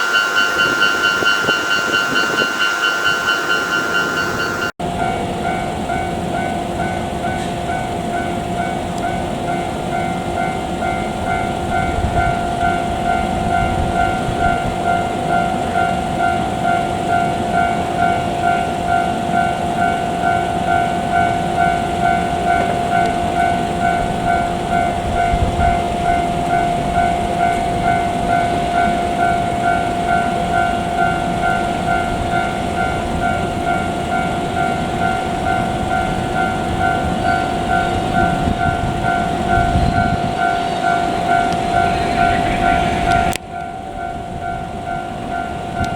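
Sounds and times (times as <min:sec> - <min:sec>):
level crossing bell ringing: 0:00.0 - 0:07.0
train rumble: 0:00.0 - 0:45.9.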